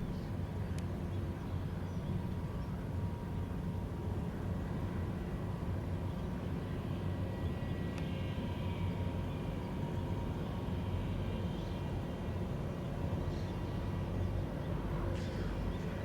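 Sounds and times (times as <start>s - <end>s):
faint engine whine: 0.0s - 16.0s
turboprop engines droning: 0.0s - 16.0s.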